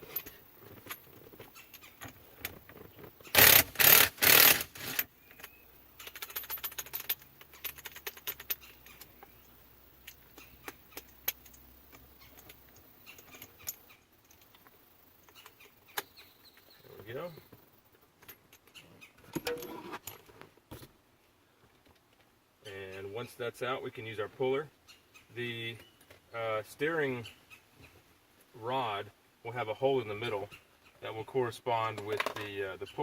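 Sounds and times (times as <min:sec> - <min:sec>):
metallic clicks and rattles: 0:00.0 - 0:16.7
impact wrench bursts: 0:03.3 - 0:05.1.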